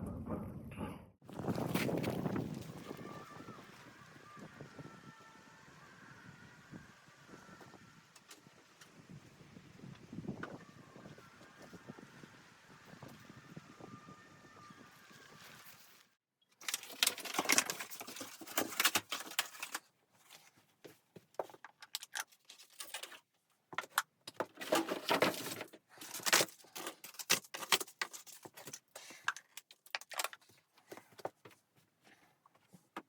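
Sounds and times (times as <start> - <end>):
wind noise: 0.0 - 16.0
rustling and crinkling: 1.3 - 4.8, 14.9 - 33.0.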